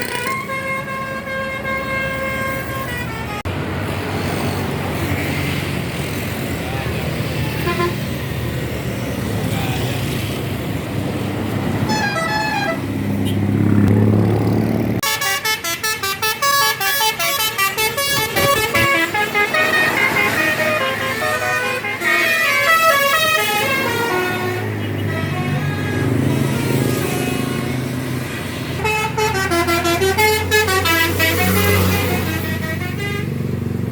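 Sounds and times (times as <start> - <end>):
multi-tone bus horn tune: 0.0 - 3.5, 7.6 - 8.2, 11.8 - 13.5, 15.0 - 33.7
bus engine running: 0.0 - 33.9.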